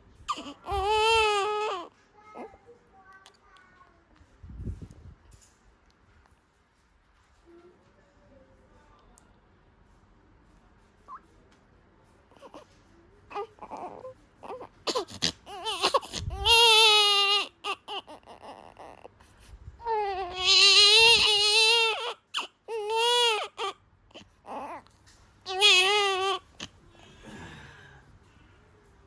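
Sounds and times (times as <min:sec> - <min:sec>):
baby crying: 0:00.3 - 0:02.5, 0:13.3 - 0:19.1, 0:19.8 - 0:24.8, 0:25.5 - 0:26.7.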